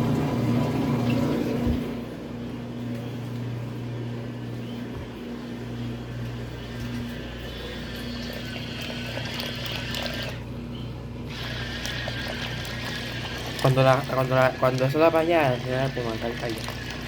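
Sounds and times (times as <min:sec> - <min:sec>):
washing machine motor hum: 0:00.0 - 0:17.0
water churning: 0:07.5 - 0:10.5, 0:11.3 - 0:17.0.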